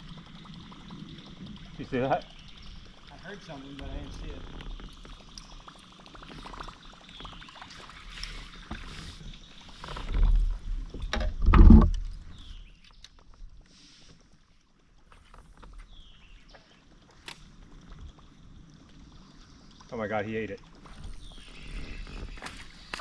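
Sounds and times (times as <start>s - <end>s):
water splashing and sloshing: 0.0s - 23.0s
knocks against kayak hull: 11.1s - 12.0s.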